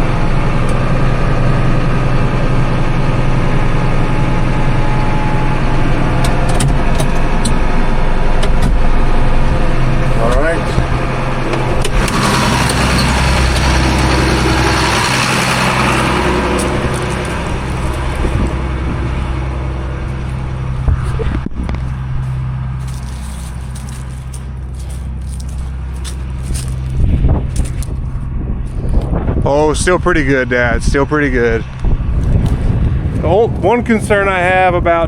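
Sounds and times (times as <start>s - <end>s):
diesel engine running: 0.0s - 35.0s
broad rushing noise: 31.0s - 35.0s.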